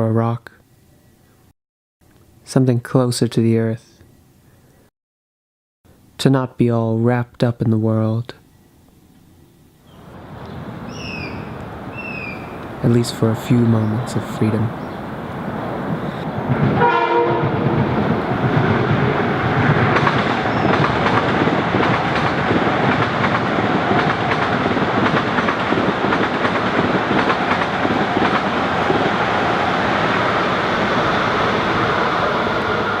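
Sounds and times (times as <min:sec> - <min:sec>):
train wheels clacking on rails: 0:15.9 - 0:29.4
train horn: 0:16.8 - 0:17.9.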